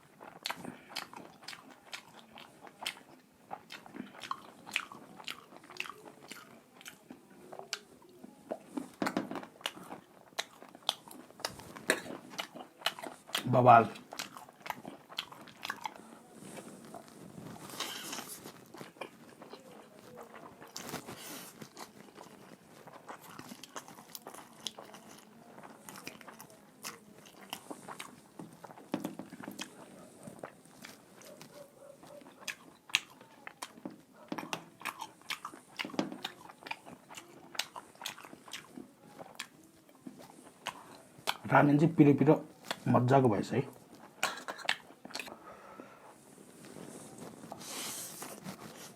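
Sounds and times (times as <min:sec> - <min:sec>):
chewing and crunching food: 0:00.0 - 0:48.9
mouth clicks and smacks: 0:43.9 - 0:45.4.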